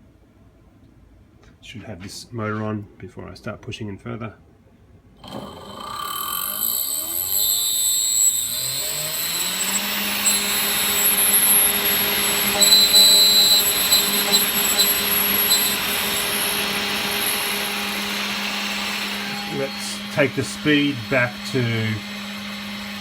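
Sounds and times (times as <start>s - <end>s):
lathe motor whining: 5.2s - 23.0s.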